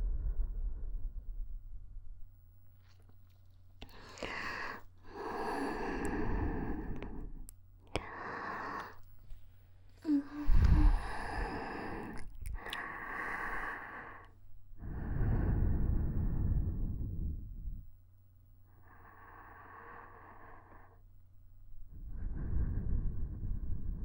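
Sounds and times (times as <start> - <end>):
close breathy sighs: 3.8 - 9.1, 10.0 - 17.8, 21.9 - 24.0
breath hitting microphone: 8.0 - 17.6.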